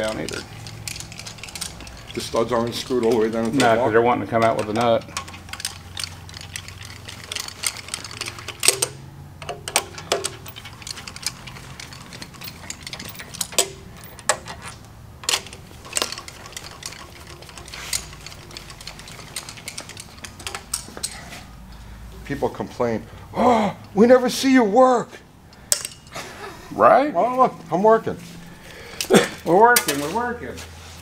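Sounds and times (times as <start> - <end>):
hand ratchet clicking: 0.0 - 21.2
metal clinks: 0.0 - 21.4, 25.5 - 26.2.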